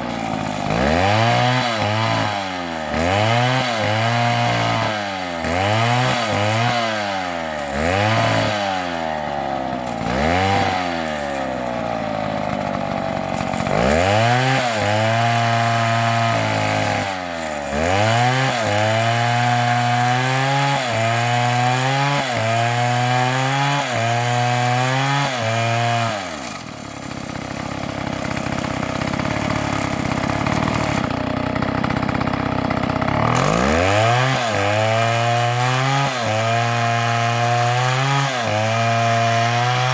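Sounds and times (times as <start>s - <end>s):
two-stroke chainsaw engine revving: 0.0s - 39.9s.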